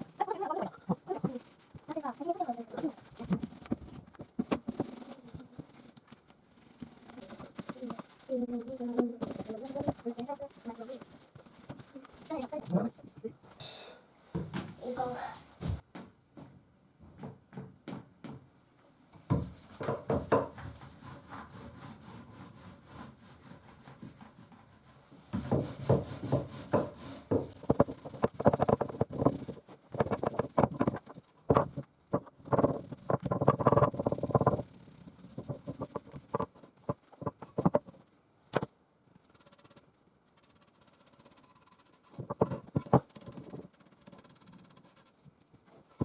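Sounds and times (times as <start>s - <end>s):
hand tool rubbing on wood: 0.0s - 12.9s, 19.4s - 31.2s, 32.1s - 37.7s.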